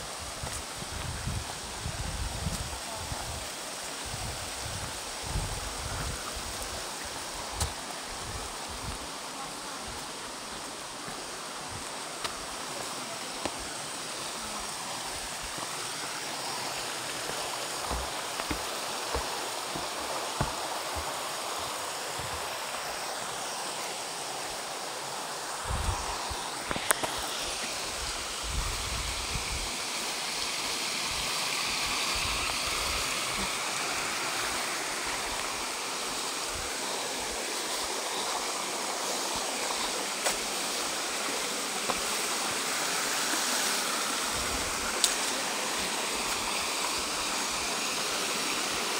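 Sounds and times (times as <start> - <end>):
waterfall roaring: 6.4 - 28.4.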